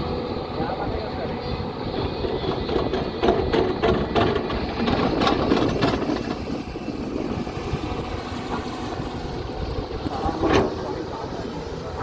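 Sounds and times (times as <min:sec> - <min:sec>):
excavator diesel engine running: 0:00.0 - 0:12.0
knocks and clanks: 0:02.0 - 0:06.5, 0:10.1 - 0:10.9.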